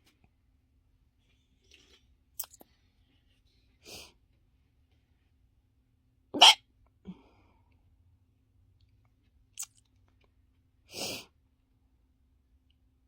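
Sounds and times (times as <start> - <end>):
person hiccuping: 6.4 - 6.6.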